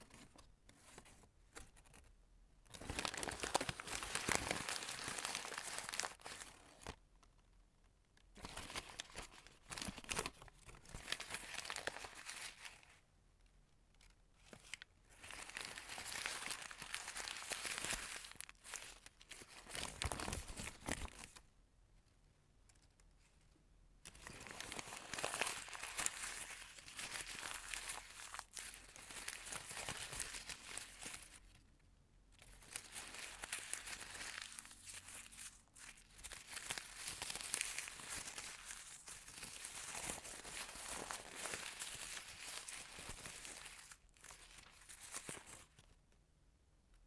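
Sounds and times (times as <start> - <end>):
paper crumpling and tearing: 2.7 - 7.0, 8.4 - 12.9, 14.4 - 21.4, 24.1 - 31.6, 32.4 - 46.0.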